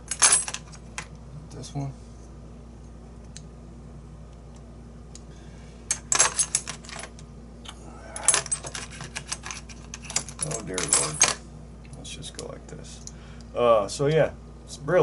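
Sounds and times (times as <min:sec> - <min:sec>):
metal lock parts clinking: 0:00.0 - 0:01.1, 0:05.9 - 0:07.2, 0:08.1 - 0:11.4.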